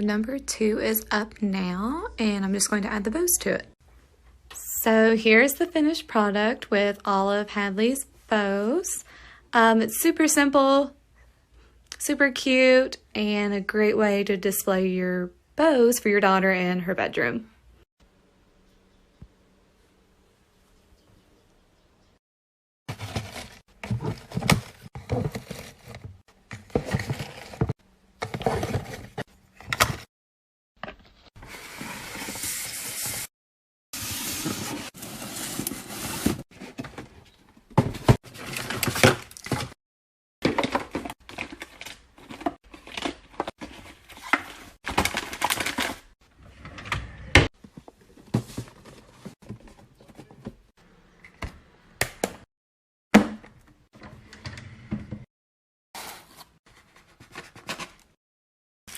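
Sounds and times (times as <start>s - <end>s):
items knocking and clattering: 22.9s - 30.0s, 36.5s - 39.8s, 40.4s - 45.9s, 47.4s - 50.7s.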